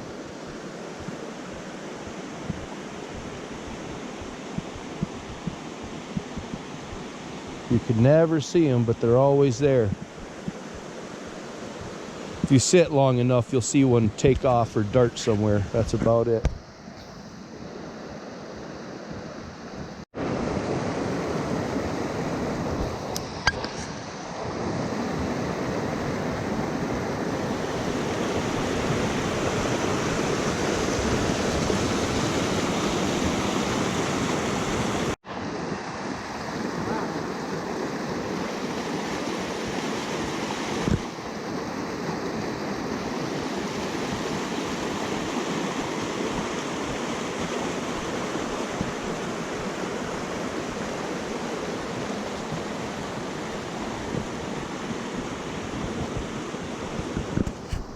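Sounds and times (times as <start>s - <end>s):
creek water rushing: 0.0s - 57.9s.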